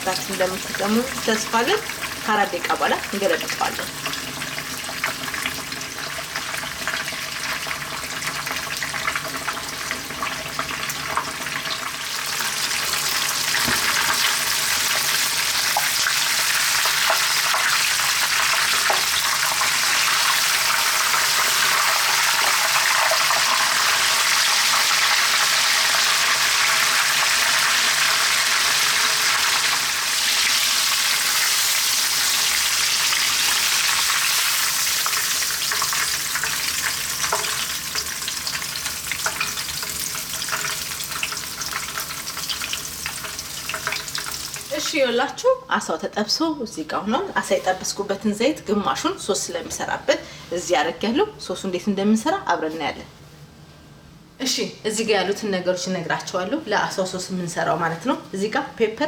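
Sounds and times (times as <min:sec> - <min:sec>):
fish sizzling in hot oil: 0:00.0 - 0:44.9.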